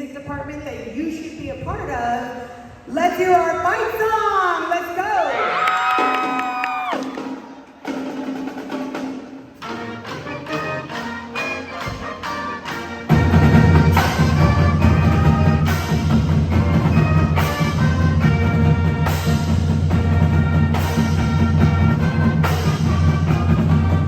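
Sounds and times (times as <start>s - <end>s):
marching band playing: 5.9s - 24.0s
heavy drums: 6.0s - 10.4s, 11.6s - 24.0s.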